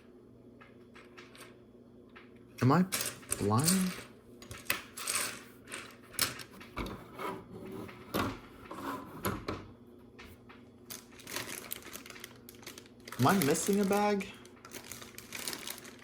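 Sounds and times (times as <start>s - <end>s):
plastic pieces rummaged on table: 3.0s - 6.6s, 10.9s - 16.0s.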